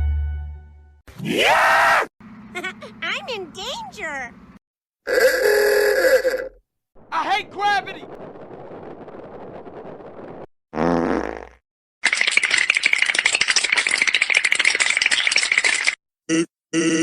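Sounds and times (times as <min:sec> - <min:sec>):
dense crackling rattle: 0:07.7 - 0:10.5, 0:12.0 - 0:16.0.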